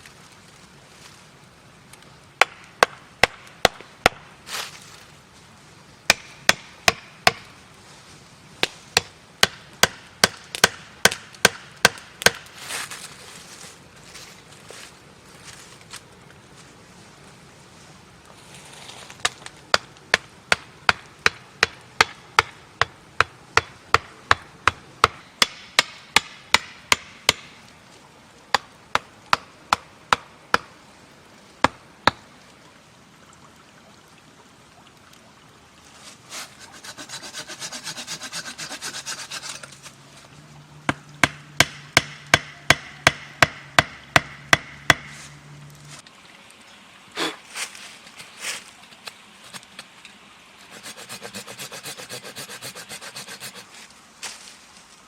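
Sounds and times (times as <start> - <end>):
rasping like sawing: 36.3 - 39.9, 50.6 - 53.8.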